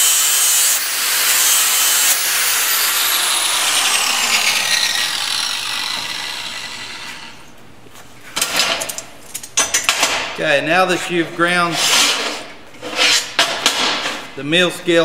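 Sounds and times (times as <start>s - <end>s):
electric grinder grinding steel: 0.0s - 7.5s.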